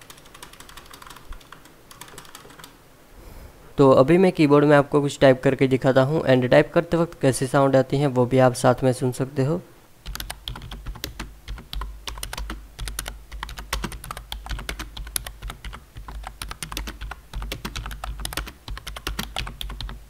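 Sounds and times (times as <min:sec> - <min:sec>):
typing on a keyboard: 0:00.0 - 0:02.8, 0:10.0 - 0:20.0.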